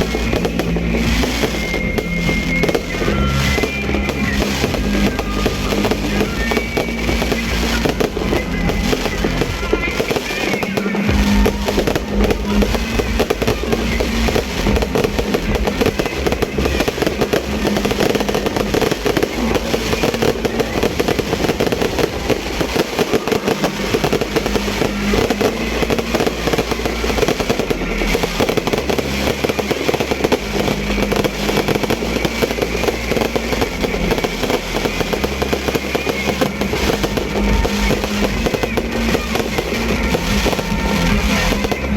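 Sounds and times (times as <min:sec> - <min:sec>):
fireworks bangs and crackling: 0:00.0 - 0:41.9
music playing: 0:00.0 - 0:41.9.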